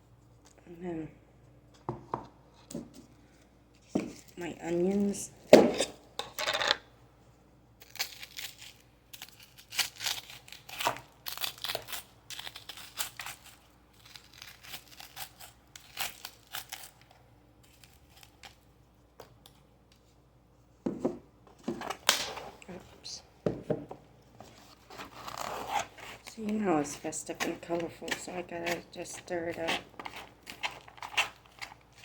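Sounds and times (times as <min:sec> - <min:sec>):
plastic packaging crinkling and tearing: 0:24.4 - 0:32.0.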